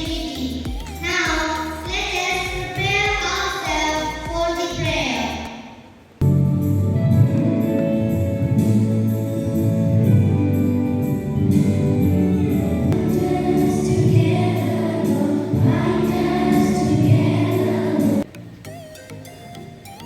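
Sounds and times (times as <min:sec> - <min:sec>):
choir singing with instruments: 0:07.3 - 0:18.3.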